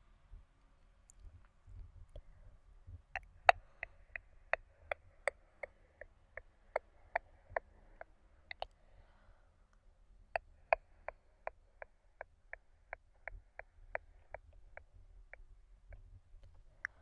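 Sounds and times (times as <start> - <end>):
sharp mouth clicks: 3.2 - 8.8, 10.4 - 17.0.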